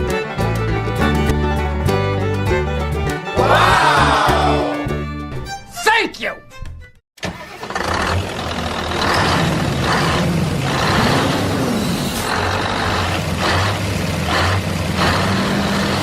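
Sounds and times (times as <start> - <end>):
small engine running: 7.4 - 16.0.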